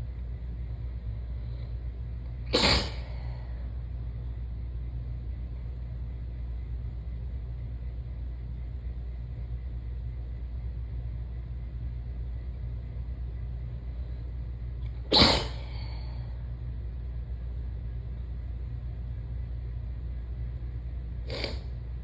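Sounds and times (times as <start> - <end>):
steady low hum: 0.0 - 22.0
person sneezing: 2.5 - 3.4, 15.1 - 16.0, 21.3 - 21.7.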